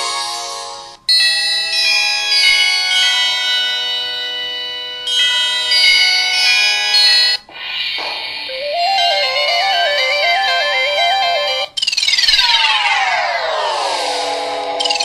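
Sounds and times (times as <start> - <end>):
phone ringtone chime melody: 8.5 - 13.2.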